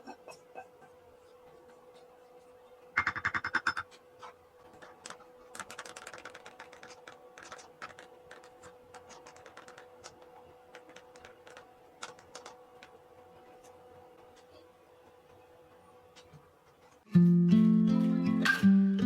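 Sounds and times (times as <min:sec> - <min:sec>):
sharp clicks and taps: 0:05.0 - 0:13.0.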